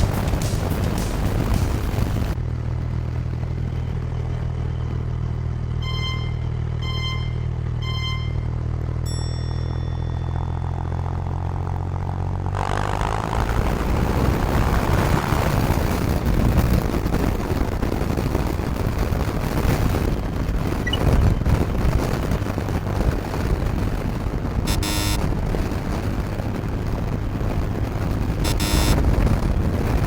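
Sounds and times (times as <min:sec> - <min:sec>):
wind rushing over microphone: 0:00.0 - 0:02.4, 0:13.0 - 0:30.0
motorcycle engine rumbling: 0:00.0 - 0:30.0.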